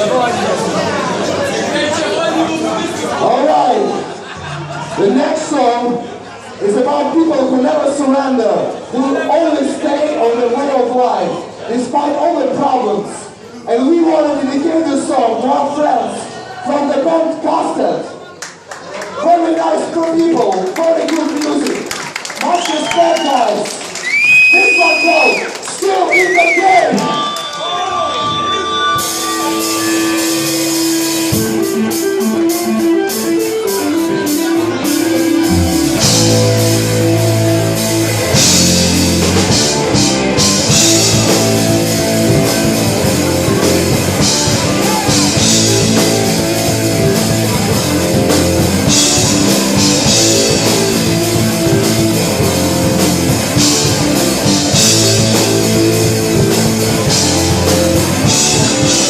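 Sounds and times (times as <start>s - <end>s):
rock band playing live: 28.2s - 59.0s
guitar riff: 28.7s - 59.0s.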